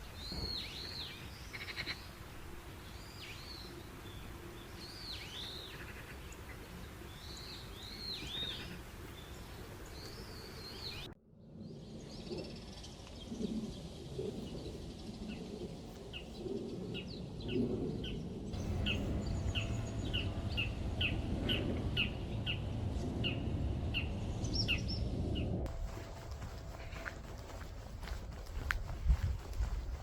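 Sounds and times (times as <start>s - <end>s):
low background rumble: 17.5s - 30.0s
small bird chirping: 18.6s - 22.6s.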